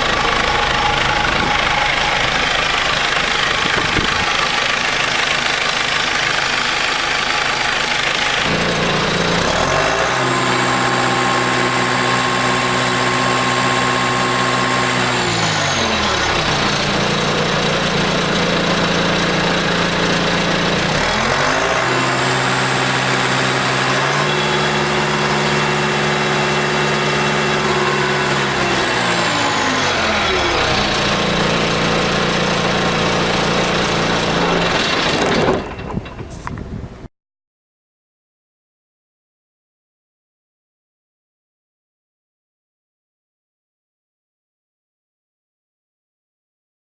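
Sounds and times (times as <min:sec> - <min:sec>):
tractor diesel engine revving: 0:00.0 - 0:35.8.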